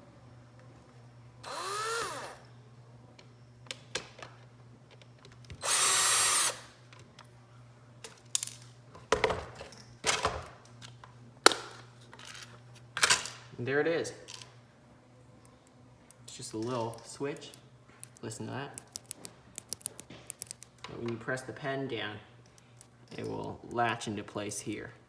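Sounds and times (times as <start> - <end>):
power drill running: 1.4 - 2.5, 5.6 - 6.7
plastic parts clicking and knocking: 16.1 - 21.0, 22.6 - 24.8.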